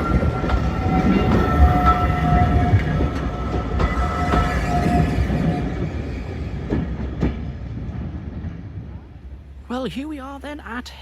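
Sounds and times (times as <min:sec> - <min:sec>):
train wheels squealing: 0:00.0 - 0:06.7
train rumbling on track: 0:00.0 - 0:11.0.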